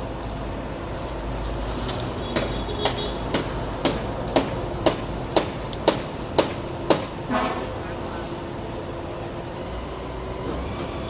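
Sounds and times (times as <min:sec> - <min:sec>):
low rumble of machinery: 0:00.0 - 0:11.0
hammer blows: 0:01.6 - 0:08.4.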